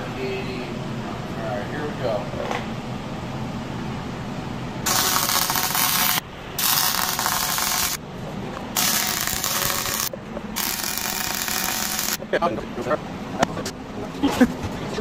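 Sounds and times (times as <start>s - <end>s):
welding arc crackling and sizzling: 4.8s - 8.0s, 8.7s - 12.3s.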